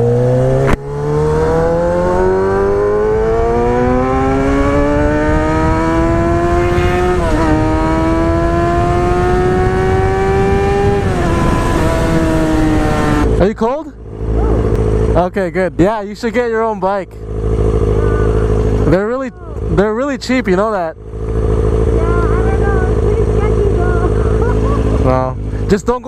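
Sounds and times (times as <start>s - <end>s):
motorcycle engine accelerating: 0.0s - 26.0s
wind rushing over microphone: 0.6s - 13.4s.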